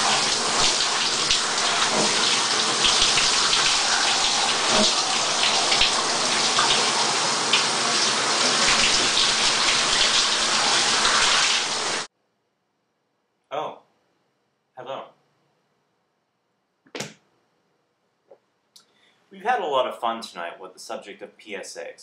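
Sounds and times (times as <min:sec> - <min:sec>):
shower spray running: 0:00.0 - 0:12.1.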